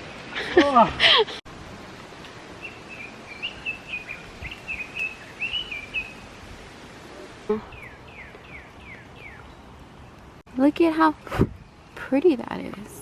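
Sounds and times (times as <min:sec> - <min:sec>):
outdoor background hiss: 0:00.0 - 0:13.0
songbird chirping: 0:02.2 - 0:13.0.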